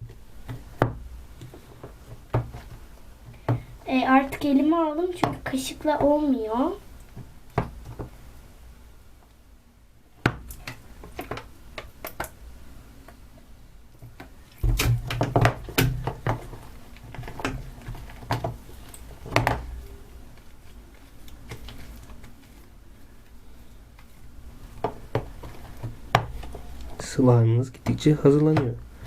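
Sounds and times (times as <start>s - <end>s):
knocks and thuds: 2.1s - 3.7s.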